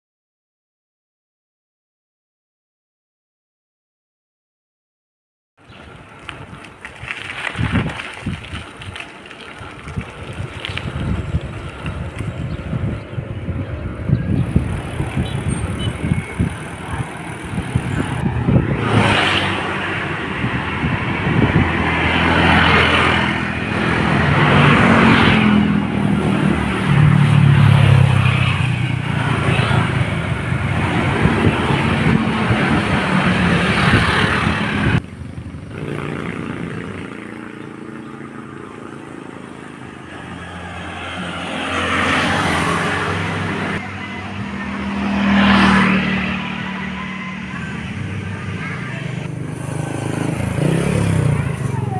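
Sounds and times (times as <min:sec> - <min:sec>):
motor vehicles passing: 0:05.6 - 0:51.9
rushing wind-like noise: 0:05.8 - 0:37.6.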